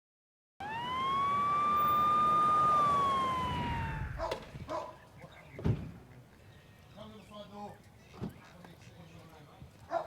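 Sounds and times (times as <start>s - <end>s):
police siren wail: 0.6s - 4.3s.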